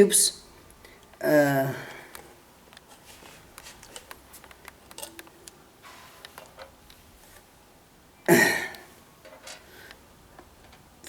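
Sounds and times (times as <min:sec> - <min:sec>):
soft rustle: 0:02.2 - 0:07.5.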